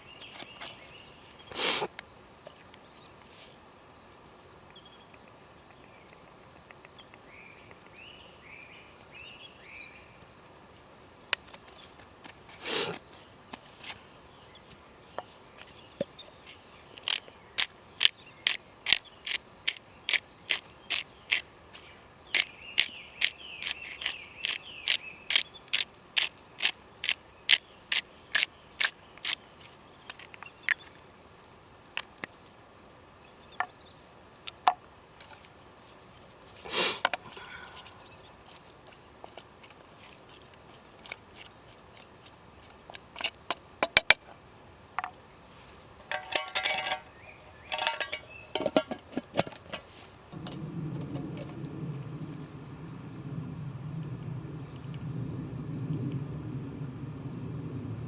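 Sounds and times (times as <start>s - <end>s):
sharp evenly paced clicks: 16.4s - 32.6s.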